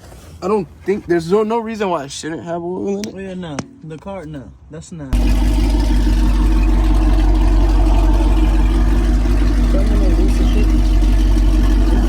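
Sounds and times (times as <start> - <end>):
vehicle running with deep hum: 5.2 - 12.0.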